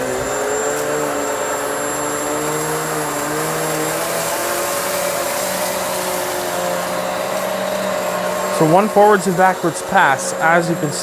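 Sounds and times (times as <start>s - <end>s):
upright vacuum motor whine: 0.0s - 11.0s.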